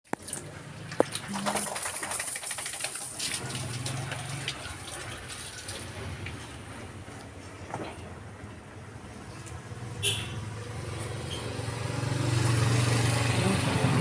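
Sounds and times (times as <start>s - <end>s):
running water: 0.1s - 7.0s.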